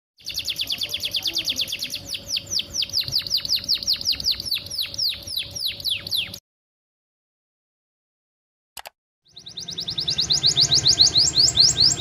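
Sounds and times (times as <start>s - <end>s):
canary singing a trill: 0.2s - 6.4s, 9.3s - 12.0s.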